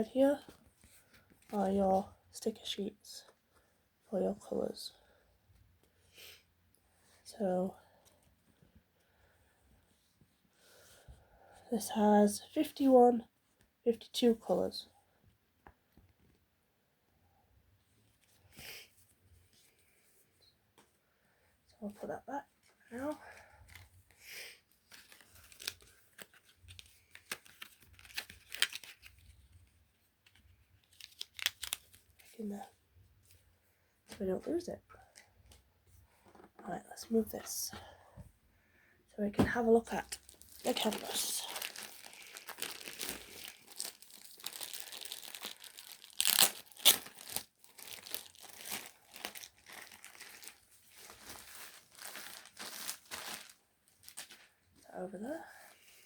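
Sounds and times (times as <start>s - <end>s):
packaging rustling and crinkling: 24.8s - 29.6s, 30.2s - 32.4s, 39.6s - 54.5s.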